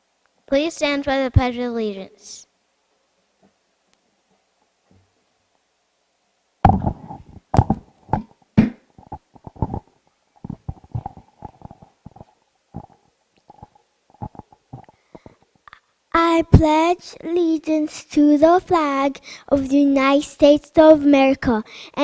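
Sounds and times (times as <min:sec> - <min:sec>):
thumps and knocks: 0:06.6 - 0:15.4
rustling: 0:06.7 - 0:15.4.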